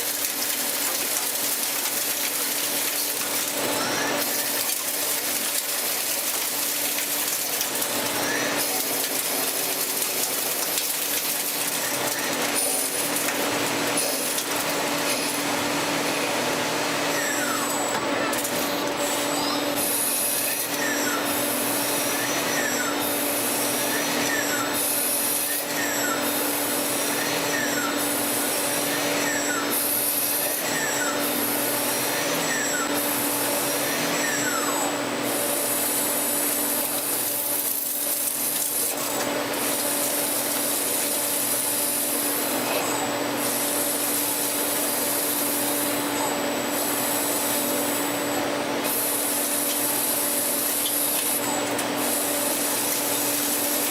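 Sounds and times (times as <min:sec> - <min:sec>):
machine hum: 0:00.0 - 0:24.6.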